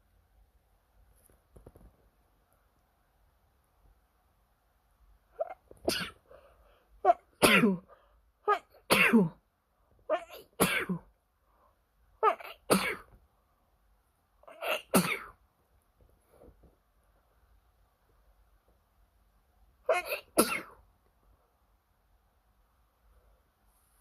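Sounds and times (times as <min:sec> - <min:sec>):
person sneezing: 0:05.4 - 0:06.4, 0:07.1 - 0:09.4, 0:19.9 - 0:20.8.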